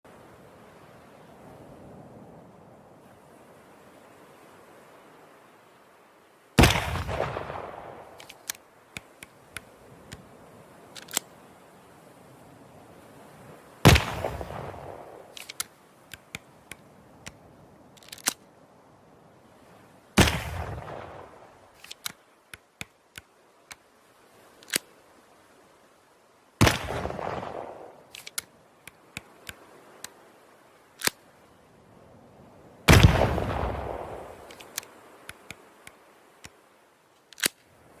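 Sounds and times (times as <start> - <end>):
sharp crack: 6.6 - 10.2, 13.8 - 17.4, 20.2 - 23.8, 26.6 - 30.2, 32.9 - 36.6.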